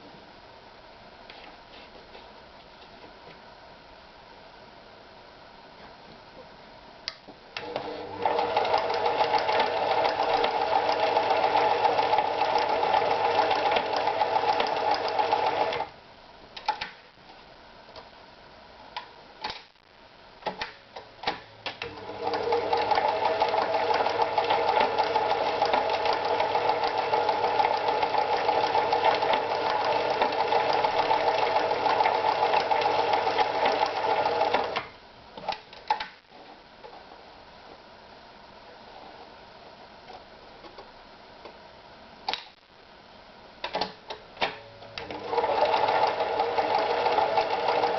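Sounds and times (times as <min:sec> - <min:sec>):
sewing machine running: 0:07.6 - 0:15.9, 0:21.8 - 0:34.8, 0:45.0 - 0:47.9.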